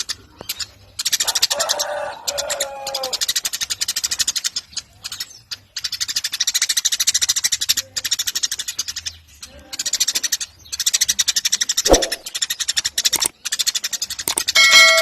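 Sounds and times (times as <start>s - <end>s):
sparrows chirping rapidly: 0.0s - 15.0s.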